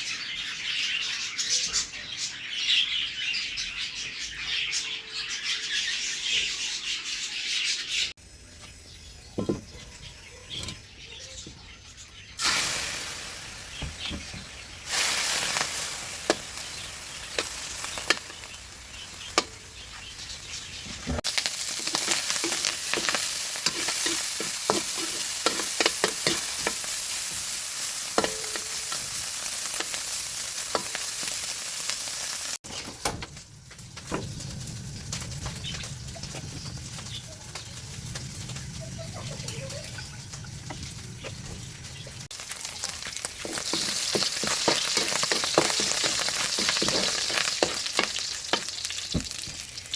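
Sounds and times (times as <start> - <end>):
food sizzling in hot oil: 12.3 - 32.8, 33.4 - 49.9
utensil scraping a pan: 21.9 - 26.9, 43.4 - 49.1.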